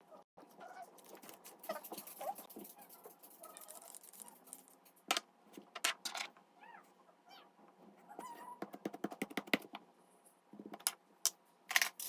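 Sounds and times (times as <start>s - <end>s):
squeaky animal vocal sounds: 8.1s - 8.6s.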